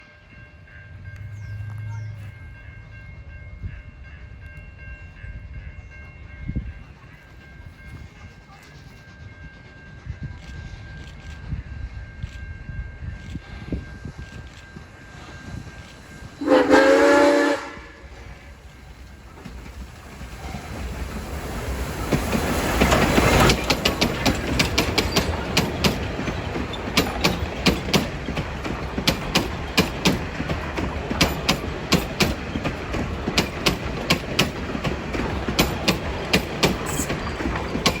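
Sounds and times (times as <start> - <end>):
train rumbling past: 0.0 - 38.0
steam locomotive whistle: 16.4 - 18.5
wheels clicking over rail joints: 18.8 - 38.0.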